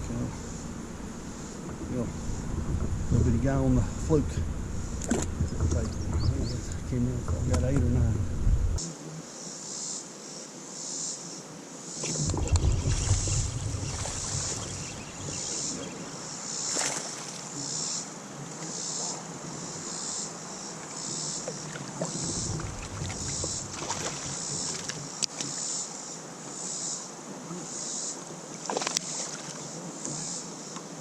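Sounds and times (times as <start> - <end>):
high pulsing chirring: 0.0 - 8.8, 12.0 - 16.8, 22.1 - 25.2
wash of water and air: 12.0 - 17.5, 21.8 - 25.0.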